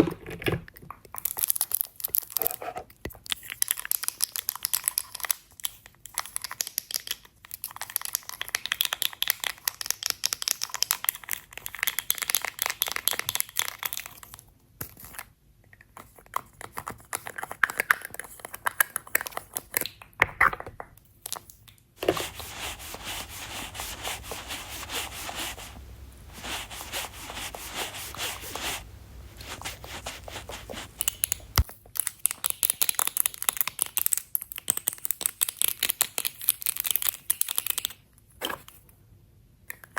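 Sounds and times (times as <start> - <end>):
rustling: 22.0 - 31.6
crinkling: 22.0 - 31.7
scratching and tapping: 22.0 - 31.7.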